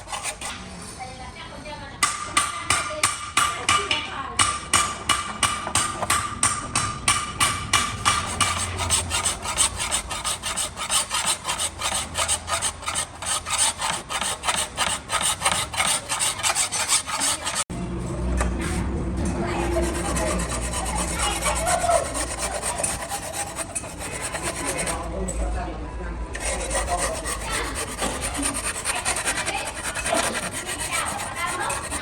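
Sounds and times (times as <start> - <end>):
file scraping metal blade: 0.0 - 0.6, 7.9 - 17.7, 19.5 - 25.3, 26.3 - 32.0.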